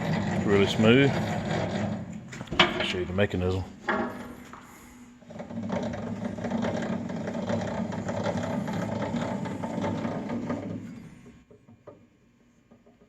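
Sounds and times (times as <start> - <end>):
bandsaw mechanism whirring: 5.3 - 11.4.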